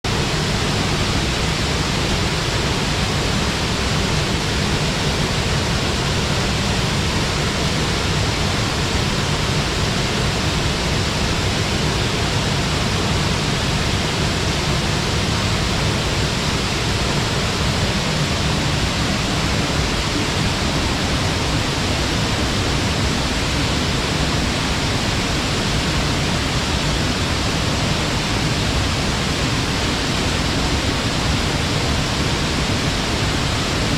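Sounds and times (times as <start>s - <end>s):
waterfall rushing into pool: 0.1s - 33.9s.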